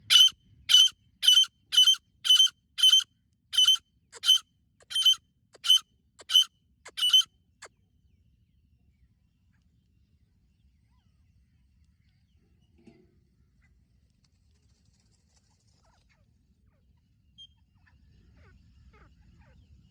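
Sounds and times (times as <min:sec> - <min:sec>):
bird calling sharp high calls: 0:00.0 - 0:03.0, 0:03.6 - 0:07.3.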